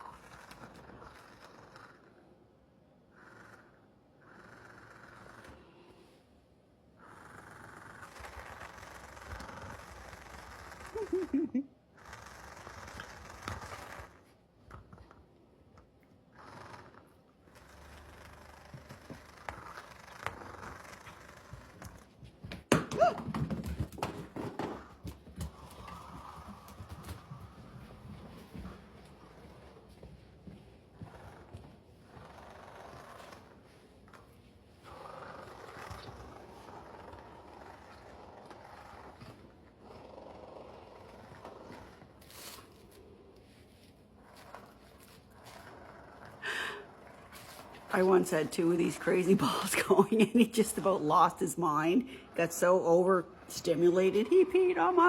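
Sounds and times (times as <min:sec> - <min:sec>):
toy ball bumping on hard floor: 0:22.4 - 0:27.4
dog growling low: 0:44.2 - 0:48.1.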